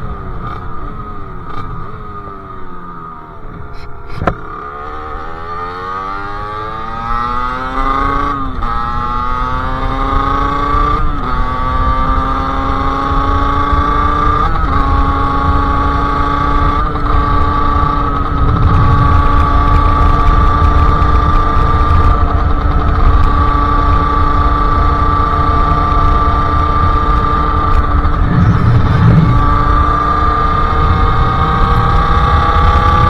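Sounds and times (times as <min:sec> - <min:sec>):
two-stroke engine accelerating: 0:00.0 - 0:33.0
low wind rumble: 0:13.1 - 0:33.0.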